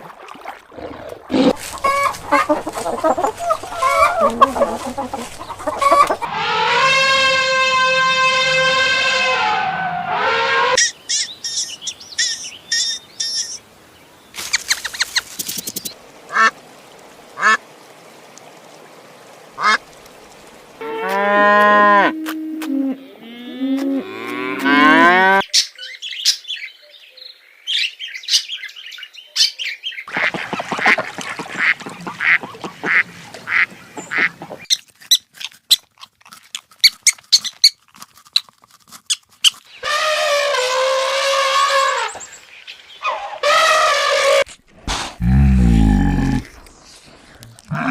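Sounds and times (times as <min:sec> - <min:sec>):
ducks quacking: 0:01.3 - 0:07.4, 0:16.3 - 0:16.6, 0:17.4 - 0:17.6, 0:19.6 - 0:19.8, 0:30.1 - 0:34.6
farm animal calls: 0:01.3 - 0:09.4.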